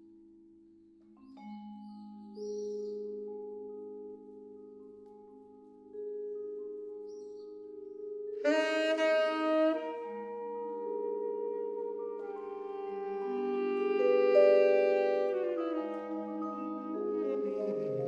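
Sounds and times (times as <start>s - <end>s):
vibraphone chords: 1.2s - 18.0s
saxophone long held note: 8.4s - 18.0s.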